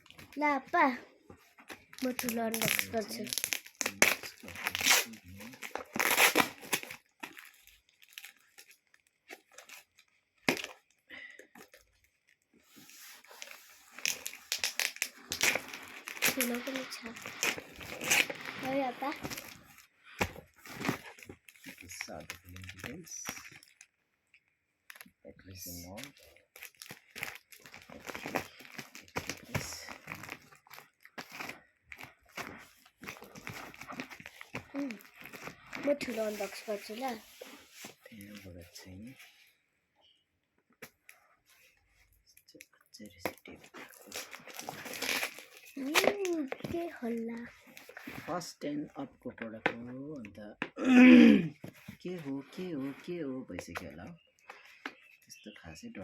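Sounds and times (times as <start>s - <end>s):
packaging rustling and crinkling: 1.3s - 23.9s, 25.8s - 39.4s, 43.2s - 48.4s
packaging tearing: 1.8s - 10.9s, 13.3s - 23.9s, 25.8s - 37.2s, 43.8s - 48.2s.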